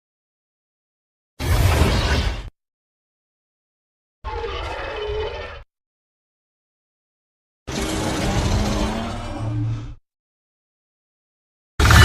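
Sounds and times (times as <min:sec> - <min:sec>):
loud rough sound effect: 0:11.8 - 0:12.0.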